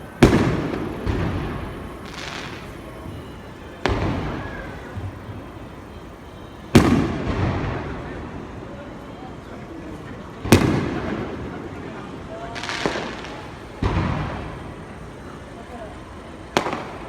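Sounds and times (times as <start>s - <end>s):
firework hissing burst: 0.0s - 8.0s
firework shells booming: 0.0s - 8.5s, 10.4s - 11.8s, 12.5s - 15.4s, 16.4s - 17.0s.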